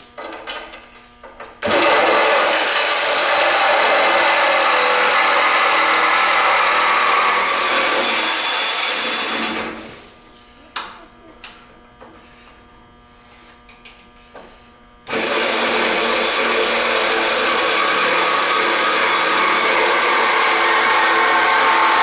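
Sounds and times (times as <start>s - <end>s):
power tool cutting steel: 1.6s - 9.8s, 15.1s - 22.0s.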